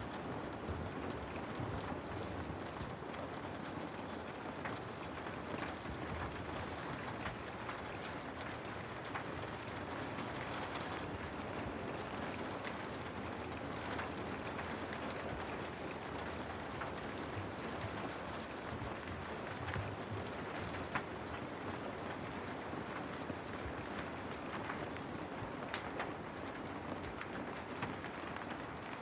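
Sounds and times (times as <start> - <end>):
rain falling: 0.0 - 29.0
drops ticking on window: 12.6 - 29.0.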